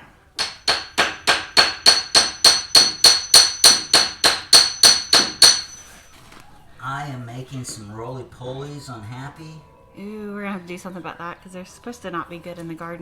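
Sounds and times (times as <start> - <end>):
hammer striking metal stake: 0.4 - 6.0.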